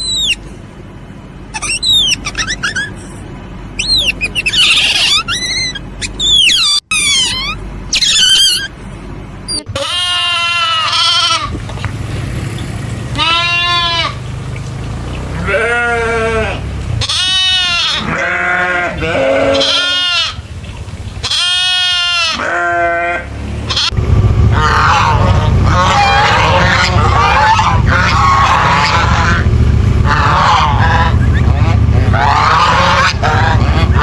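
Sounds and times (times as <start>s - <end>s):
livestock bleating: 9.7s - 11.5s, 13.0s - 14.2s, 15.3s - 20.4s, 21.2s - 34.0s.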